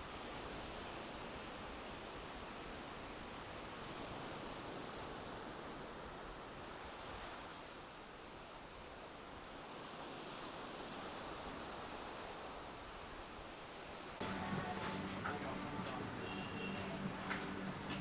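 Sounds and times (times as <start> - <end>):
steady rushing ambient noise: 14.2 - 18.0.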